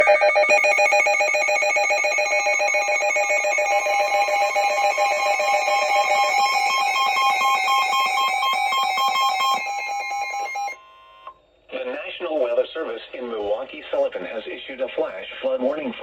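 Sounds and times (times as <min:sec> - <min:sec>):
electronic alert tone warbling: 0:00.0 - 0:10.8
pulsing high tone: 0:00.0 - 0:11.3.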